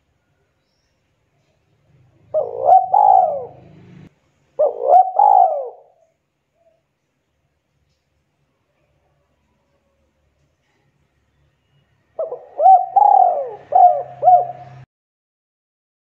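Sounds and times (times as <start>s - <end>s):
dove cooing: 1.9s - 6.0s, 12.2s - 14.9s.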